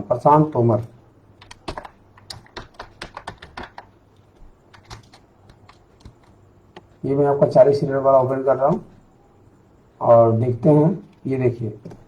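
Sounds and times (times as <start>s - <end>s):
computer keyboard clicks: 1.4s - 7.0s.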